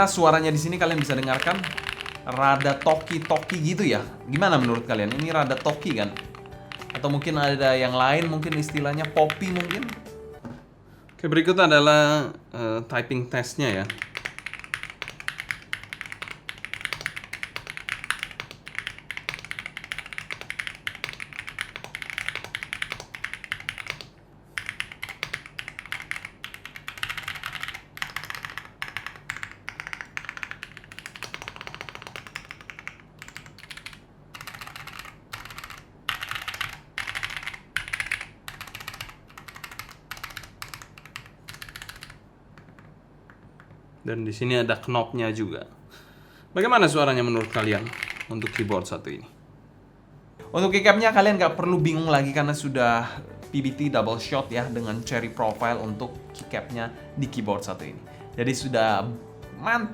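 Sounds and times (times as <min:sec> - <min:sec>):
mechanical keyboard typing: 0:00.0 - 0:10.2, 0:13.7 - 0:43.8, 0:47.2 - 0:48.9.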